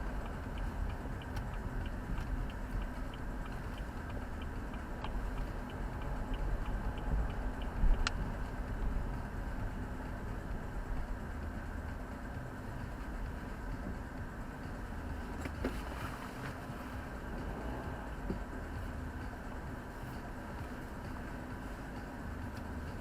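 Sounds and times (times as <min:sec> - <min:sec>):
light ticking: 0:00.0 - 0:16.6
car engine rumble: 0:00.0 - 0:23.0
road noise: 0:00.0 - 0:23.0.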